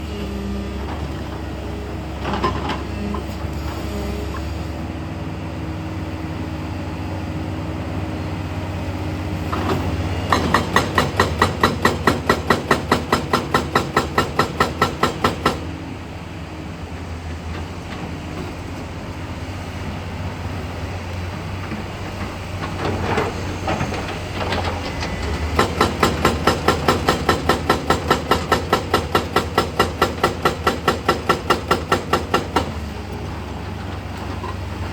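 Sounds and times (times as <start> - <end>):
diesel engine drone: 0.0 - 34.9
hydraulic rock breaker hammering: 9.5 - 15.8, 21.7 - 33.0.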